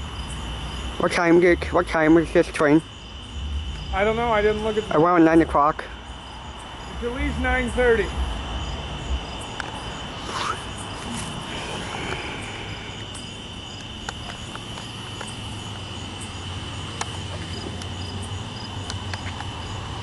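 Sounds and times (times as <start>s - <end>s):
freight train cars rumbling past: 0.0s - 13.1s
crickets chirping: 0.0s - 20.0s.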